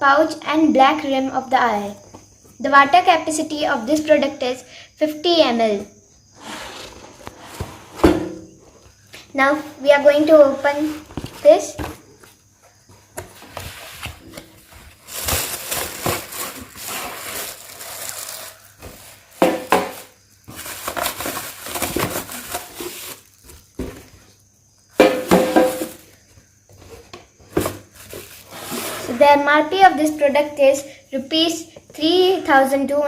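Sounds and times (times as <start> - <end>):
packaging rustling and scraping: 13.1 - 24.3, 26.8 - 29.2.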